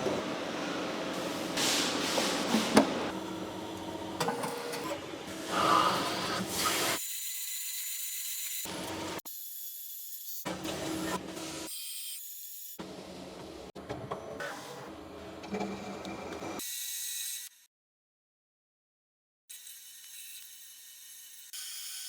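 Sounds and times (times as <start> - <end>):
machine-shop mechanical hiss: 0.5 - 3.6, 4.2 - 7.0.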